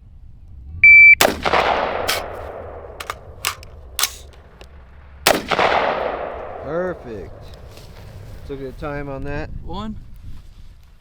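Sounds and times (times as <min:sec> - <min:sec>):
shot timer beep: 0:00.8 - 0:01.2
loud gunshots with echo: 0:01.2 - 0:04.3, 0:05.3 - 0:07.4
quieter gunshots: 0:01.2 - 0:07.8.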